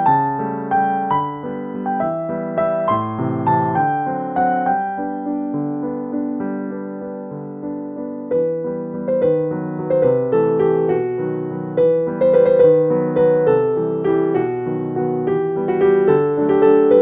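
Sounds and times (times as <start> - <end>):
gentle piano melody: 0.0 - 17.0.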